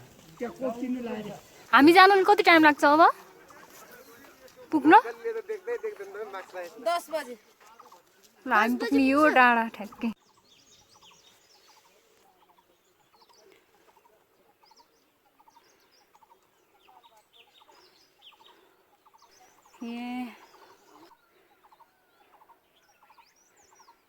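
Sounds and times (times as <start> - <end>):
birds chirping: 0.0 - 24.0.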